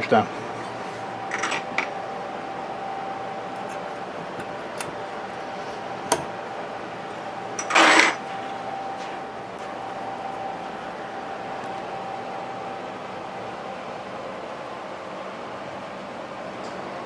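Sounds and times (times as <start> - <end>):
faint steady tone: 0.6 - 14.6.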